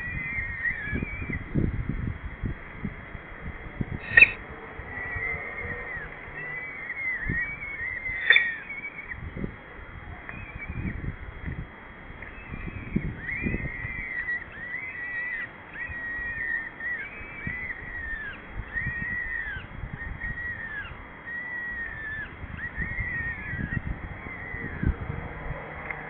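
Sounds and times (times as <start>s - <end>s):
falcons calling: 0.0s - 1.4s, 4.0s - 9.2s, 10.1s - 11.0s, 12.2s - 25.0s.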